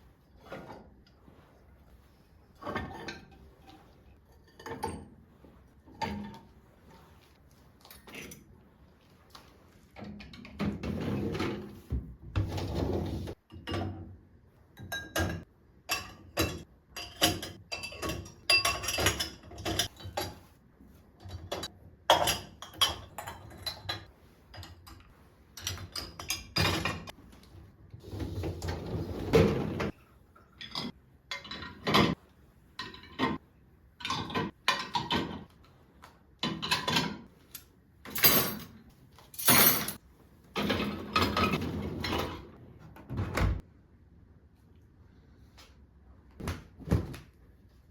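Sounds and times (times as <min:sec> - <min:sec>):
dishes clinking and knocking: 0:14.8 - 0:20.5.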